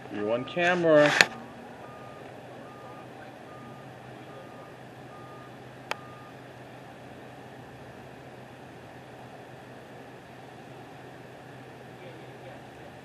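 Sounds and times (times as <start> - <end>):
reversing alarm beeping: 1.4 - 6.4.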